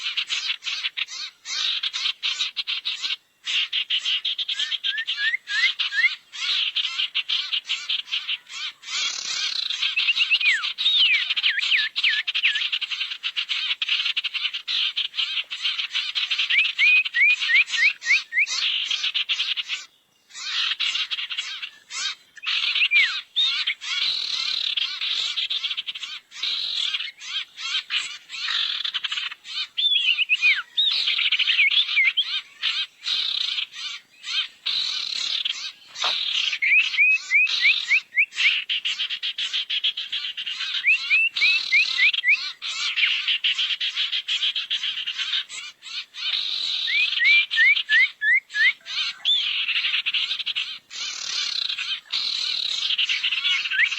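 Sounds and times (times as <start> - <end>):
buzzy bird chattering: 31.8 - 39.5
short rising bird chirps: 33.9 - 38.6.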